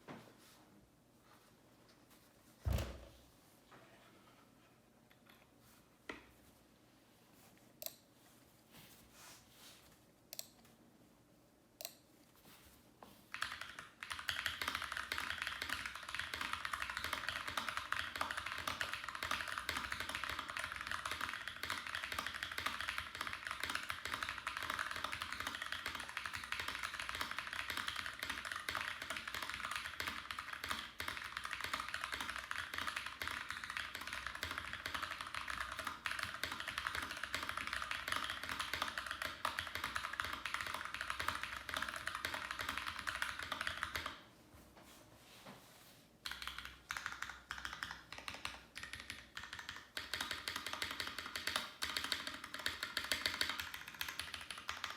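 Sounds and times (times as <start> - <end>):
typing on mechanical keyboard: 13.3 - 44.2, 46.2 - 54.9.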